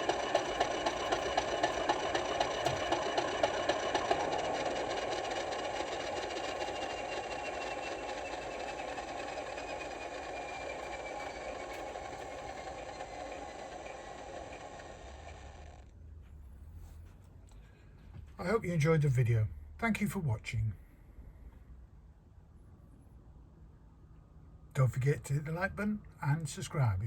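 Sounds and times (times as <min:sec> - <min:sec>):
diesel engine running down: 0:00.0 - 0:15.8.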